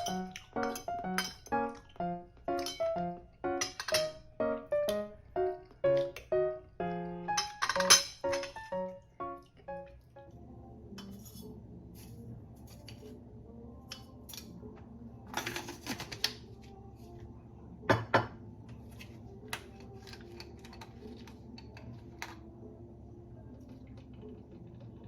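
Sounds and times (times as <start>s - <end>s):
dishes and cutlery clinking: 0.0s - 4.3s, 7.3s - 9.0s, 11.0s - 13.1s, 15.3s - 16.4s, 19.0s - 22.4s
low steady hum: 0.0s - 15.8s.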